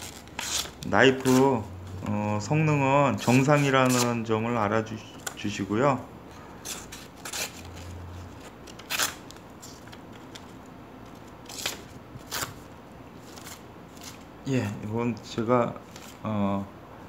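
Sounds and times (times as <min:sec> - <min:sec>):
multitool cutting paper: 0:00.0 - 0:01.6, 0:03.1 - 0:04.3.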